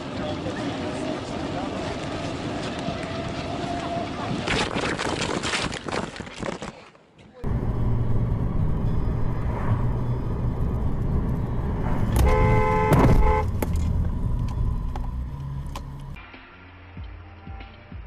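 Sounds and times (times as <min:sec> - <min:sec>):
vehicle engine and road noise: 0:00.0 - 0:04.6, 0:07.4 - 0:17.8
car horn: 0:12.1 - 0:13.6.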